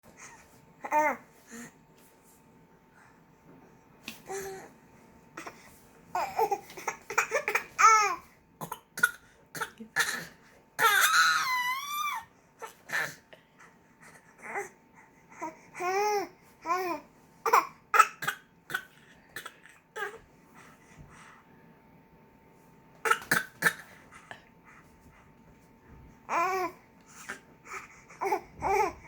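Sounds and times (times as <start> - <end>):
baby fake coughing: 6.2 - 11.3, 17.4 - 20.2, 23.0 - 24.0
baby squealing: 10.8 - 12.2.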